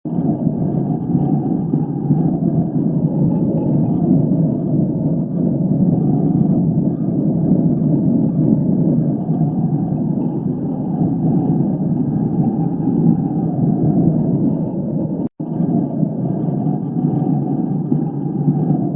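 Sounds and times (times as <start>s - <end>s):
low wind rumble: 0.0s - 18.9s.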